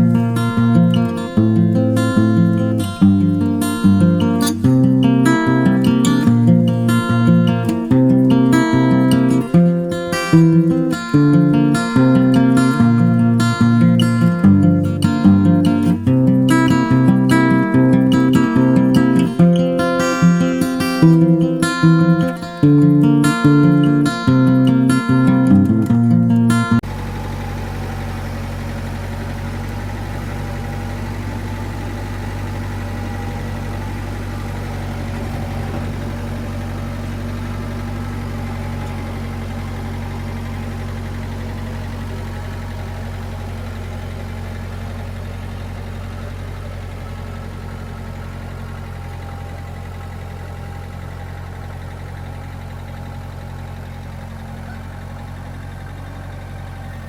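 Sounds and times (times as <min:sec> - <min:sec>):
engine running steadily: 0:00.0 - 0:57.0.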